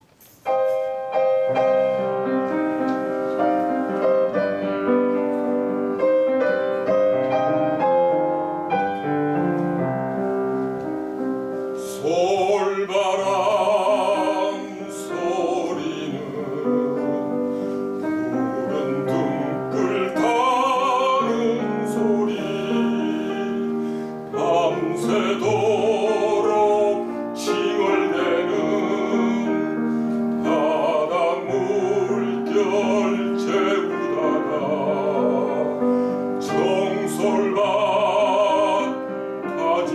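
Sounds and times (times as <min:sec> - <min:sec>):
piano playing: 0:00.0 - 0:39.9
man singing with vibrato: 0:11.5 - 0:39.9.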